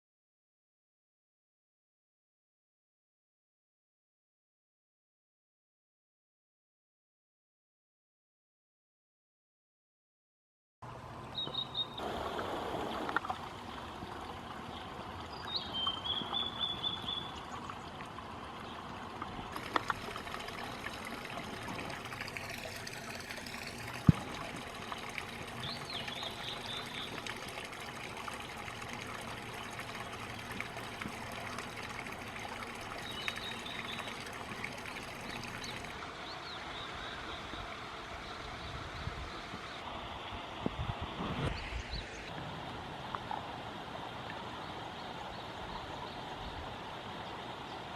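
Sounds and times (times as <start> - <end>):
stream trickling over rocks: 10.9 - 47.9.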